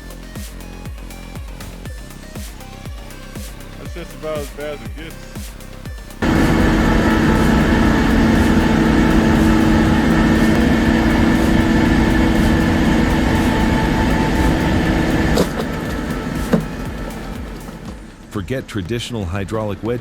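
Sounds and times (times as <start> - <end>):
heavy machine engine running: 6.2 - 18.3.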